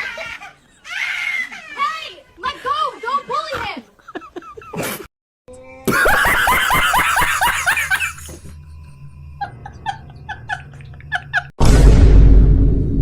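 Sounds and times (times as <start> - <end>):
person laughing: 4.0 - 5.0, 5.9 - 8.6, 9.4 - 11.5
loud swishing hit: 11.6 - 13.0.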